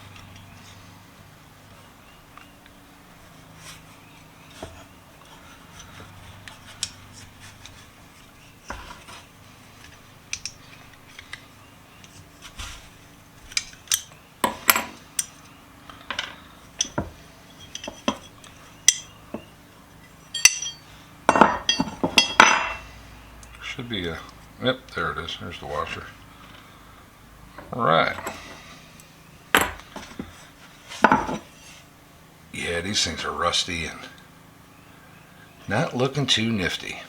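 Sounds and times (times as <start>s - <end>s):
tools and parts tapping: 4.5s - 7.8s, 9.8s - 12.3s, 13.5s - 22.8s, 27.6s - 28.6s, 29.5s - 30.4s, 31.0s - 31.5s
metal pliers clinking: 17.6s - 19.1s, 20.3s - 22.8s.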